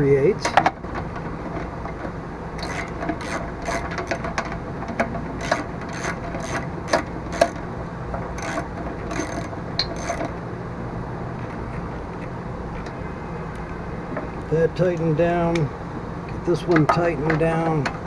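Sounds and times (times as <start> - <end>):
hand ratchet clicking: 2.6 - 7.6, 8.4 - 10.4.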